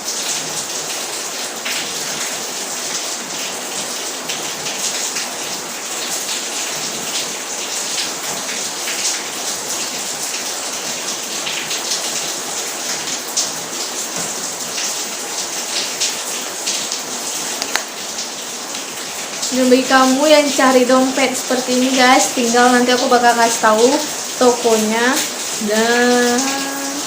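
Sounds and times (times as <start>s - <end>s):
steady rain: 0.0s - 27.0s.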